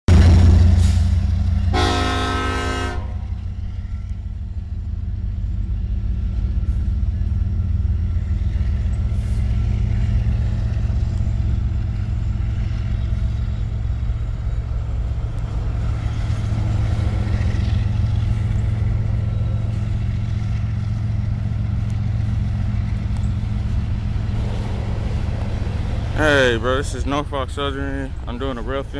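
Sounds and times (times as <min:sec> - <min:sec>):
train horn blast: 0:00.1 - 0:03.5
low train rumble: 0:00.1 - 0:28.9.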